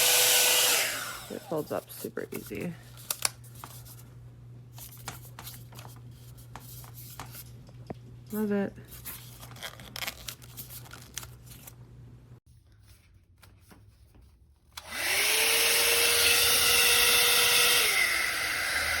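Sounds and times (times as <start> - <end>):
hair dryer motor whine: 0.0 - 1.7, 14.8 - 19.0.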